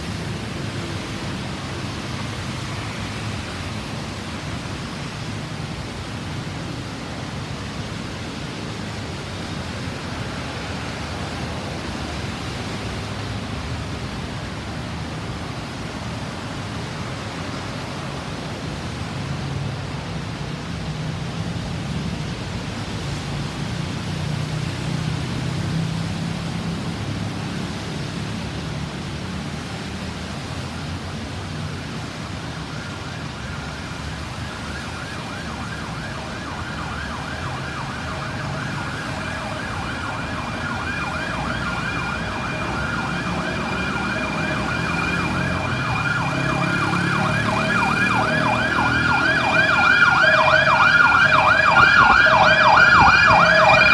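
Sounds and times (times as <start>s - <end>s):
road traffic rumble: 0.0s - 53.9s
ambulance siren warbling: 32.0s - 53.9s.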